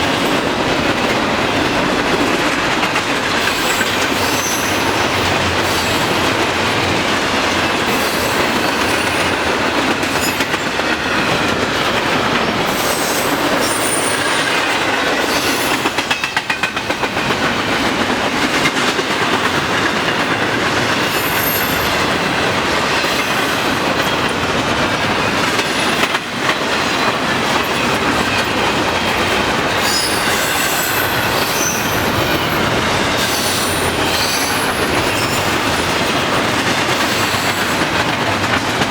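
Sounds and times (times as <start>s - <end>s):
train wheels rumbling on rail: 0.0s - 38.9s
clicking over rail joints: 0.1s - 38.9s
high wheel squeals: 3.6s - 5.0s, 12.8s - 14.5s, 21.1s - 22.1s, 29.8s - 35.7s.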